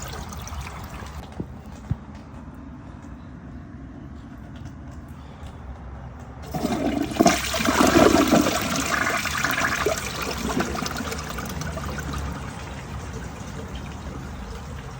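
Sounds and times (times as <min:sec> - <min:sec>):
toilet flushing: 0:00.0 - 0:01.2, 0:06.4 - 0:14.9.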